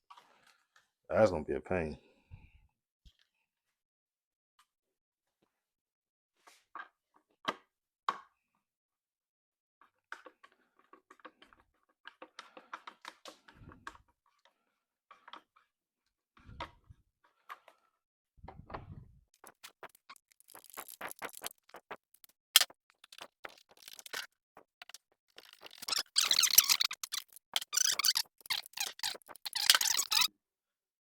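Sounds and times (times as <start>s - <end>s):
hand tools clicking and tapping: 19.4s - 30.3s
scratchy rubbing: 19.4s - 30.3s.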